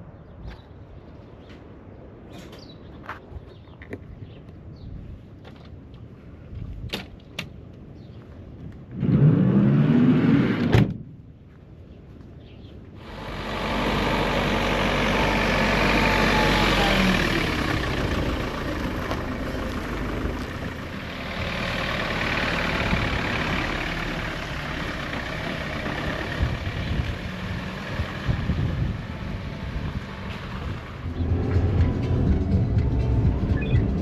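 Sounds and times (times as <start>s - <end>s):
road noise: 0.0s - 34.0s
vehicle engine hum: 8.8s - 10.8s, 12.9s - 34.0s.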